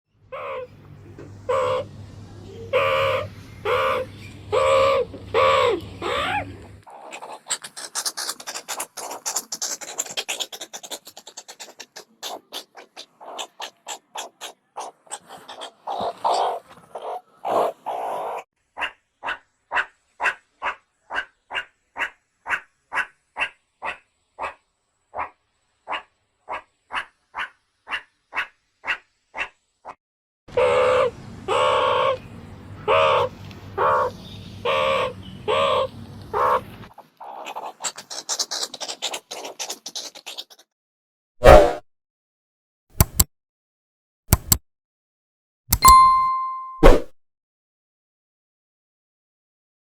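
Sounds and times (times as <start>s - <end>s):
meerkat short calls: 0.3s - 0.7s, 2.7s - 24.6s, 30.5s - 32.2s, 32.9s - 40.6s
meerkats chirping chatter: 0.3s - 0.7s, 1.5s - 1.9s, 2.5s - 24.6s, 25.2s - 29.5s, 30.5s - 40.7s
meerkats yelping: 0.3s - 0.7s, 1.5s - 1.9s, 2.7s - 24.6s, 25.2s - 32.2s, 32.8s - 40.6s.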